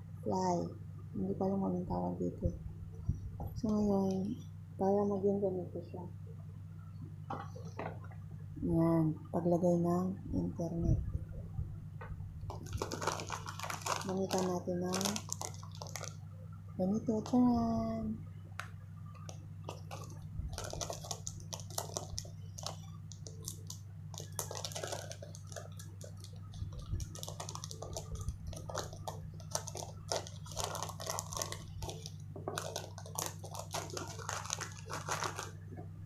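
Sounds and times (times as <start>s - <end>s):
low electrical hum: 0.0s - 36.0s
plastic wires crackling and rustling: 12.5s - 16.2s, 19.2s - 35.8s.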